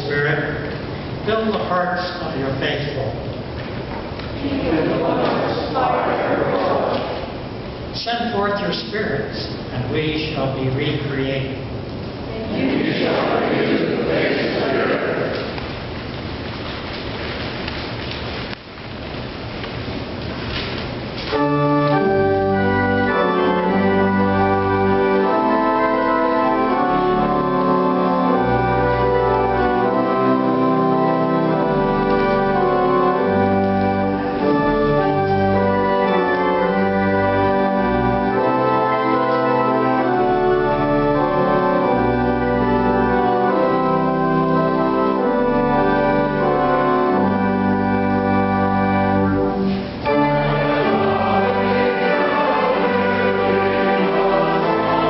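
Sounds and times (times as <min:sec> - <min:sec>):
organ playing chords: 0:04.4 - 0:11.8, 0:12.4 - 0:15.8, 0:21.1 - 0:55.0
rustling: 0:13.0 - 0:22.2.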